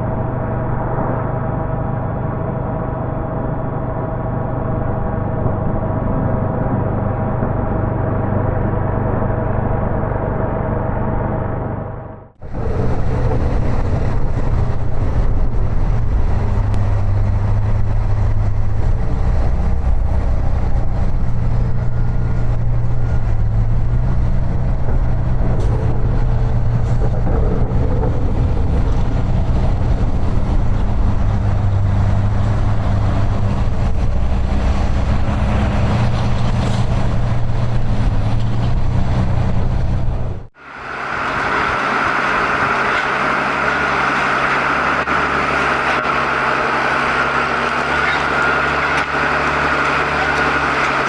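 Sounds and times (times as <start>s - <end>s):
snow-clearing machine engine: 0.0s - 51.0s
rushing noise: 12.4s - 51.0s.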